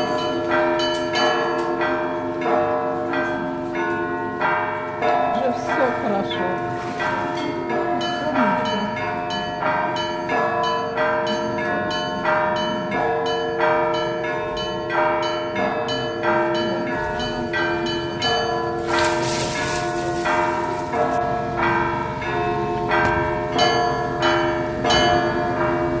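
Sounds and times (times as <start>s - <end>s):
large bells ringing: 0.0s - 26.0s.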